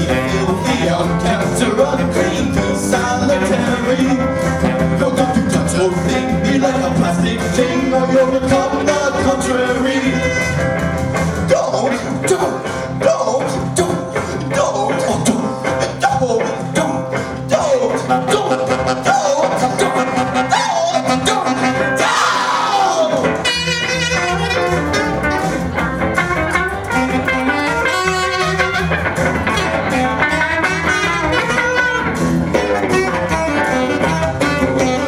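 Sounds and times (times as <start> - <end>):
guitar-led instrumental music: 0.0 - 35.0.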